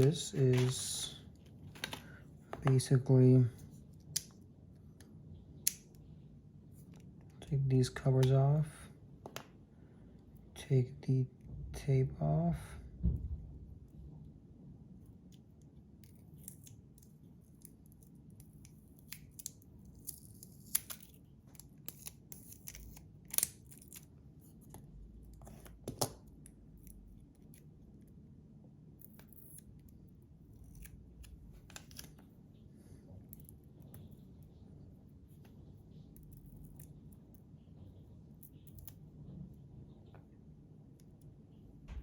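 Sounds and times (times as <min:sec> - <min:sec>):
tape peeling off plastic: 0:30.5 - 0:32.3.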